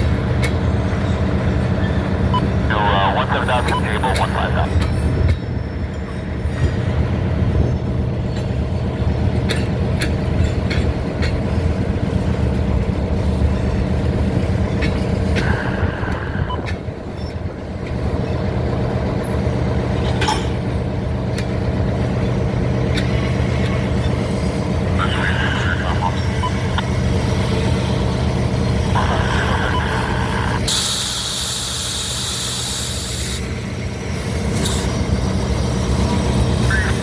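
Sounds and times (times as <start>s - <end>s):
diesel locomotive engine running: 0.0s - 37.0s.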